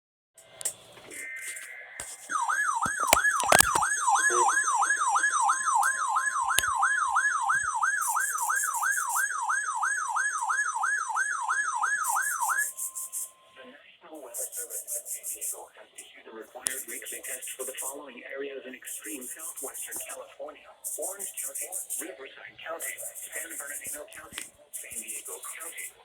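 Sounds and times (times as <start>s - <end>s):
sharp clicks: 2.8s - 4.0s, 5.8s - 6.8s.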